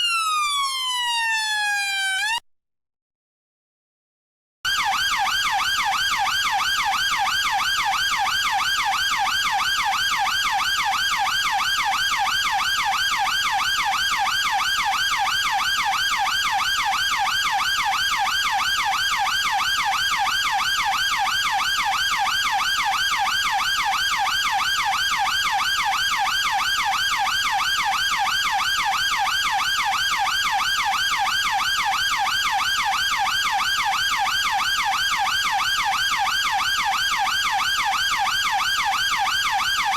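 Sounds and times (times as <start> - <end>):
police siren yelping: 0.0 - 2.4, 4.7 - 39.9.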